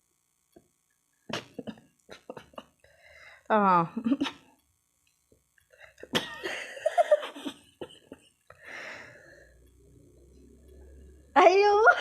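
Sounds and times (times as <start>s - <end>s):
person coughing: 1.3s - 2.7s, 6.0s - 8.2s.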